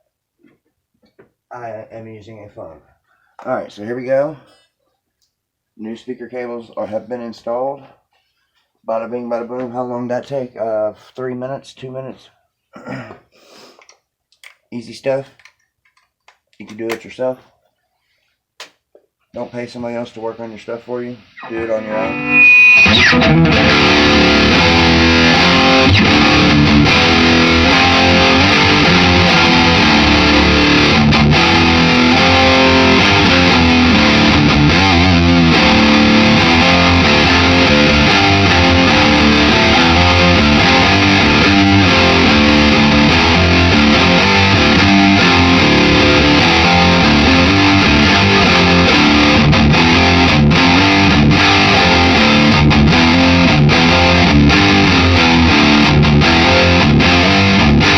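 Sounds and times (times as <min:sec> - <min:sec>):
electric guitar notes and chords: 0:21.4 - 0:57.9.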